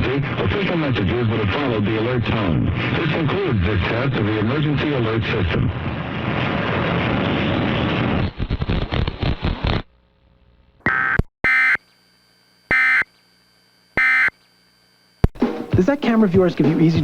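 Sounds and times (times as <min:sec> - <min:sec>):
digital data tone bursts: 0:10.9 - 0:11.9, 0:12.7 - 0:15.2.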